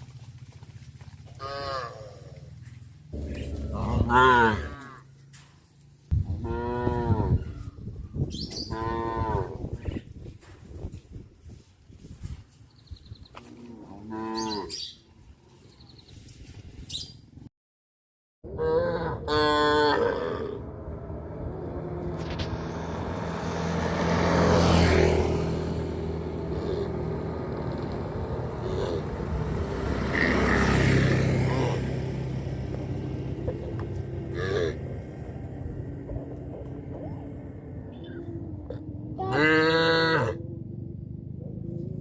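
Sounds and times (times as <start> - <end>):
cattle mooing: 1.4 - 2.5, 3.1 - 5.1, 6.4 - 7.4, 8.7 - 9.6, 13.5 - 14.8, 18.5 - 20.7, 28.4 - 29.3, 34.2 - 34.9, 38.0 - 40.4.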